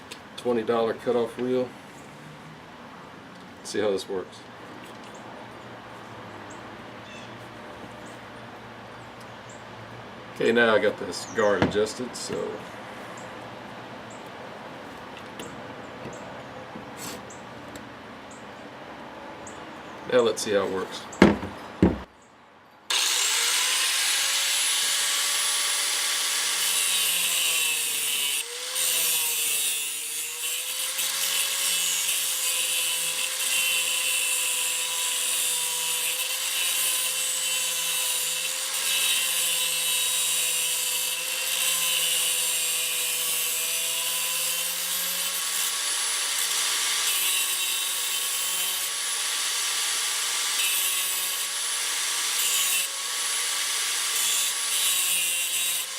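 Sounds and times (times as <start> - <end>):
cutoff tool grinding metal: 22.9 - 55.9.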